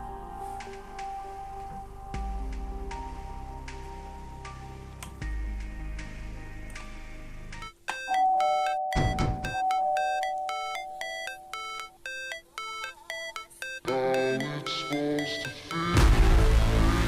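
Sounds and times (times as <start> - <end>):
music with deep bass: 0.0 - 7.5, 14.2 - 17.0
chiming melody: 7.9 - 16.0.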